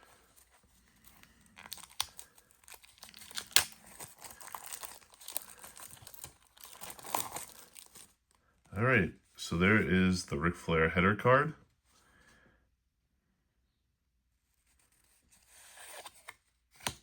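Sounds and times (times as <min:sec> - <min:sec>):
sharp wrapper crackles: 0:00.9 - 0:08.3
wrapper tearing and crinkling: 0:01.0 - 0:08.2.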